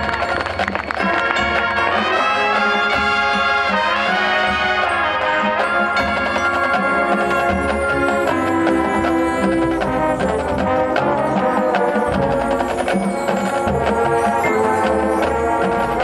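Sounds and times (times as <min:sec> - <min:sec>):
drum line percussion: 0:00.0 - 0:16.0
brass holding chords: 0:01.0 - 0:12.8.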